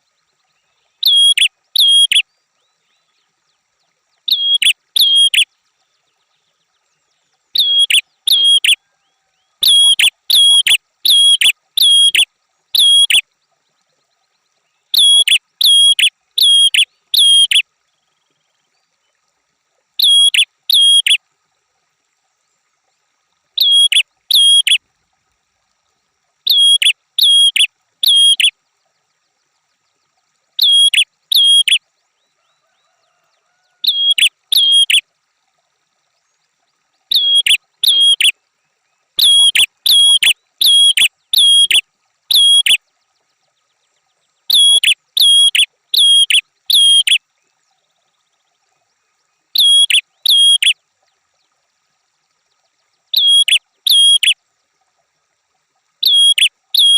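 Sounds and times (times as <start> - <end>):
bird chirping: 0.6 - 3.1, 4.3 - 5.4, 7.6 - 8.8, 9.6 - 13.2, 14.8 - 17.6, 20.0 - 21.2, 23.6 - 24.8, 26.5 - 28.5, 30.6 - 31.8, 33.8 - 35.0, 37.1 - 38.3, 39.2 - 42.8, 44.5 - 47.2, 49.6 - 50.8, 53.1 - 54.4, 56.0 - 56.9.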